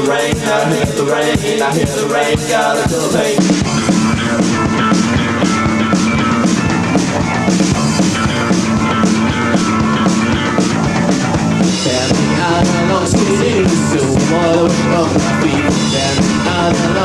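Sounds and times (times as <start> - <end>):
drum kit beat: 0.0 - 17.0
rock band playing live: 0.0 - 17.0
person singing: 11.8 - 17.0.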